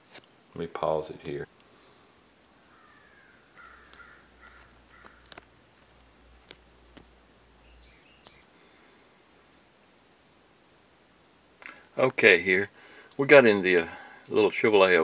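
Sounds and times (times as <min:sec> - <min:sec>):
faint sharp clicks: 0:08.2 - 0:08.5, 0:11.6 - 0:12.0.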